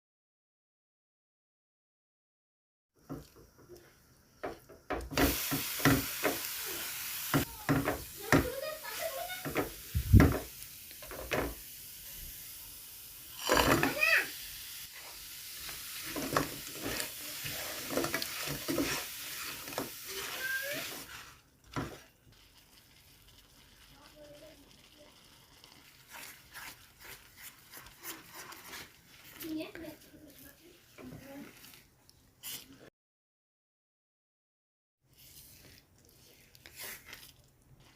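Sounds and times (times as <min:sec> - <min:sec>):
food sizzling in a hot pan: 0:03.0 - 0:31.8, 0:35.1 - 0:37.9
knock: 0:10.1 - 0:10.5.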